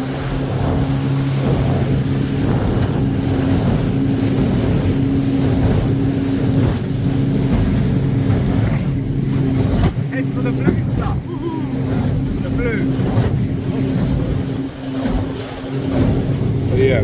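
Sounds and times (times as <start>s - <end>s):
motorboat engine running: 0.0s - 17.0s
rushing water: 0.0s - 17.0s
wind: 0.0s - 17.0s.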